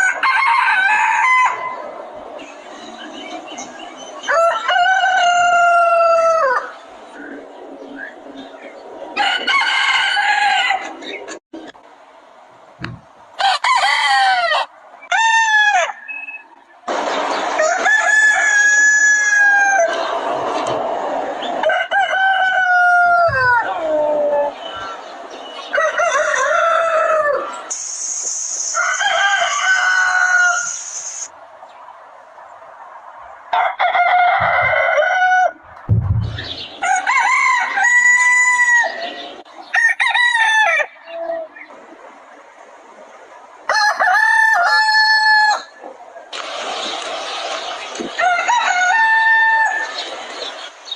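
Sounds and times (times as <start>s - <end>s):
roosters crowing: 0.0s - 7.6s, 9.0s - 11.4s, 13.3s - 27.8s, 28.5s - 31.3s, 33.5s - 41.7s, 43.7s - 45.9s, 48.1s - 50.1s
steady high hiss: 27.7s - 29.0s.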